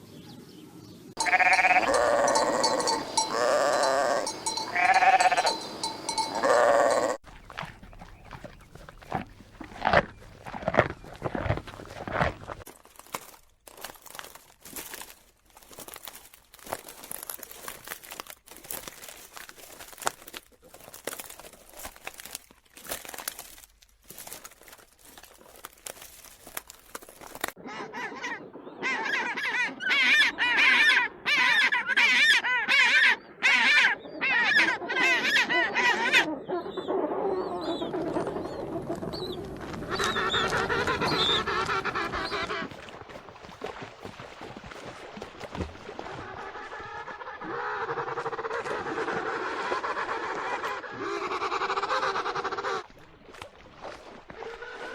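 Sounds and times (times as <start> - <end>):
loud honking bird calls: 1.2 - 7.2
clicks and crackling: 12.1 - 27.6.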